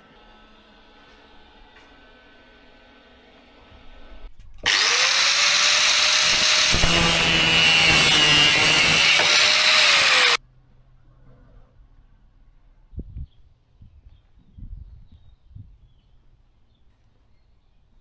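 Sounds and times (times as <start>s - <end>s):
handheld power tool running: 4.6s - 10.4s.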